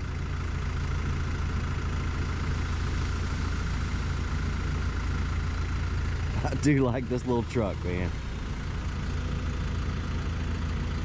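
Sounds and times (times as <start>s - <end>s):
diesel engine humming: 0.0s - 11.0s.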